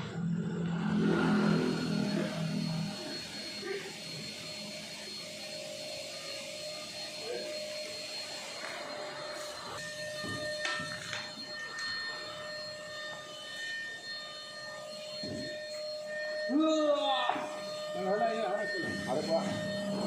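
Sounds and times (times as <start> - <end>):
deep hum: 0.0 - 3.2
hydraulic pump motor whine: 0.0 - 20.0.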